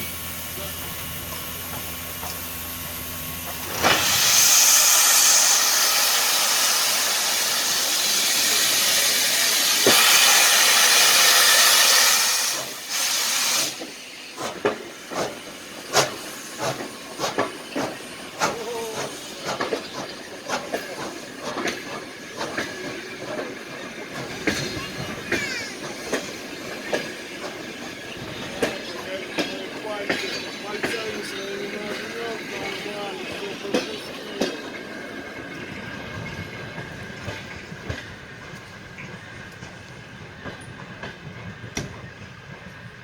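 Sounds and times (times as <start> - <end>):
locomotive steam hissing: 0.0 - 43.0
locomotive running gear knocking: 14.4 - 34.8.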